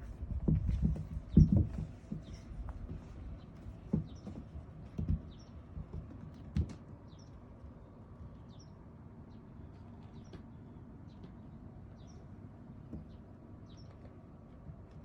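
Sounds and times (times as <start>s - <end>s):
kittens' paws thumping and pattering: 0.0s - 8.5s
faint high bird chirps: 13.0s - 14.1s.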